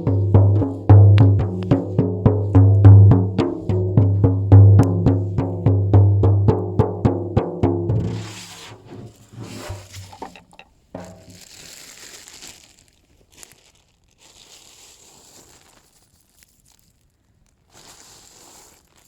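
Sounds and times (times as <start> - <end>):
deep drum beat: 0.0 - 11.4
crinkling paper rustle: 8.2 - 19.0.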